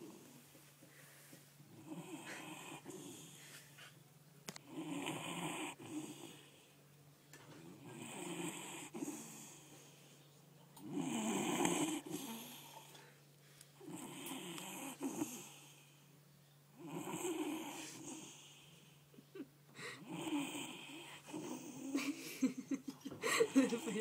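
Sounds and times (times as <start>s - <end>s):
steady low hum: 0.0s - 24.0s
person snoring: 10.9s - 12.9s, 19.8s - 22.1s.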